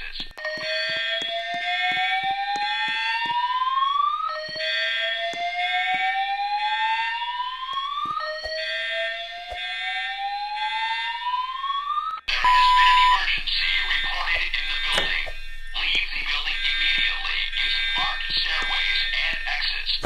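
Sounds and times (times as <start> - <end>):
fire alarm whoop tone: 0.4 - 13.4
steady high tone: 12.3 - 13.3.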